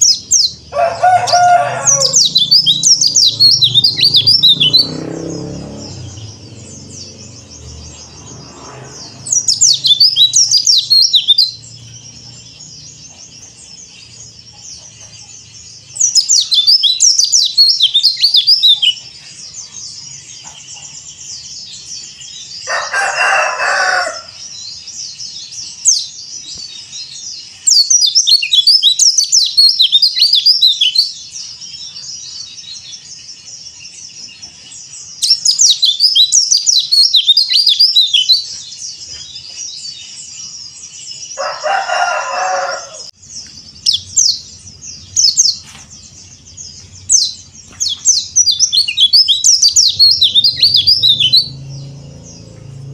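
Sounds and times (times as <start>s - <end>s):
harsh bird call: 0.0s - 11.7s, 22.6s - 24.5s, 41.4s - 52.9s
bird twittering song: 0.0s - 52.9s.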